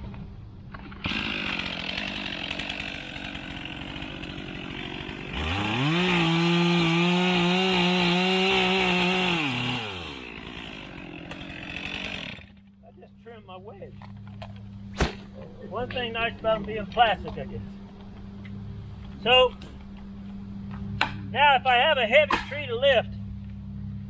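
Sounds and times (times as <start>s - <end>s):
chainsaw idling and revving: 1.0s - 12.8s.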